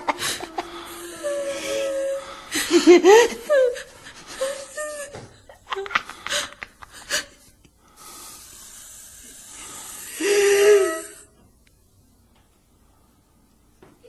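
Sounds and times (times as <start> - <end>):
moaning cry: 0.0 - 2.6
steady hiss: 5.8 - 13.8.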